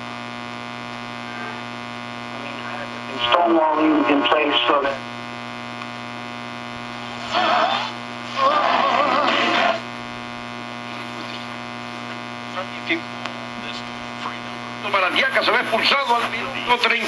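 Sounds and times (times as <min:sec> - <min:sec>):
radio mains hum: 0:00.0 - 0:17.0
warbling radio station bursts: 0:02.3 - 0:05.2, 0:06.8 - 0:17.0.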